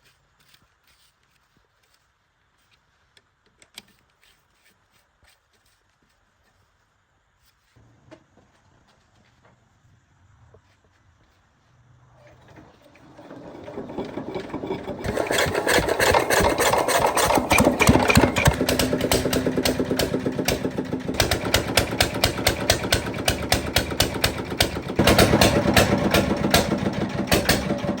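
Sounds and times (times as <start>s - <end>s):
generator engine clattering: 12.4s - 28.0s.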